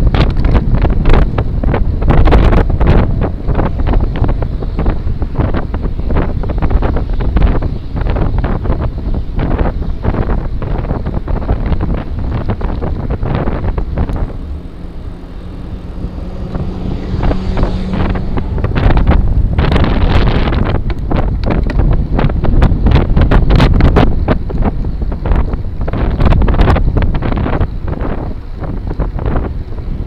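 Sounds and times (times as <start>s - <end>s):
wind buffeting microphone: 0.0s - 30.0s
steady low hum: 10.0s - 28.5s.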